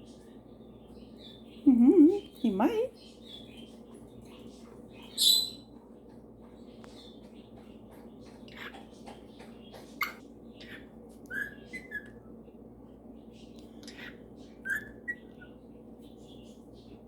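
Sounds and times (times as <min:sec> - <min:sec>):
parrots chirping and whistling: 0:05.1 - 0:05.7, 0:10.0 - 0:12.3, 0:13.8 - 0:15.5.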